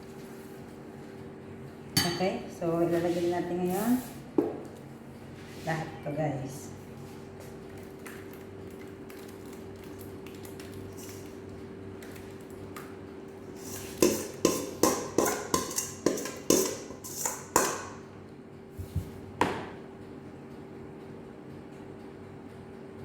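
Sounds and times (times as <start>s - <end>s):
utensil knocking on bowl: 13.8s - 17.9s.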